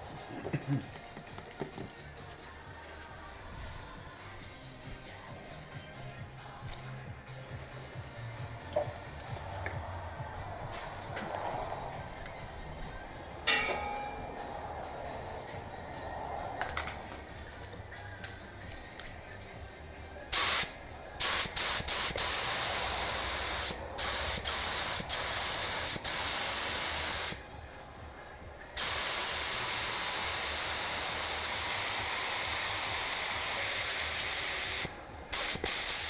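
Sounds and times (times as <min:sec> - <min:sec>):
paint spray gun spraying: 0:20.3 - 0:27.4, 0:28.8 - 0:36.0.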